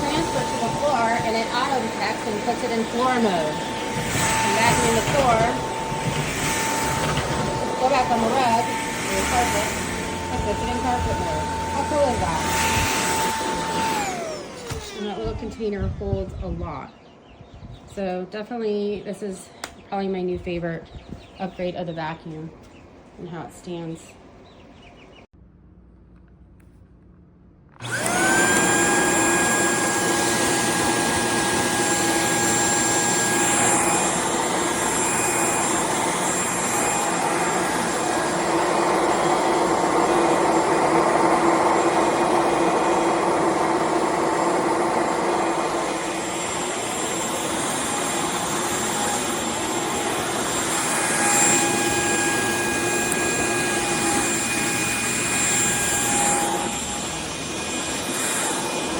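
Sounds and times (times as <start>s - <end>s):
stick vacuum motor whining: 0.0s - 15.8s, 27.7s - 58.9s.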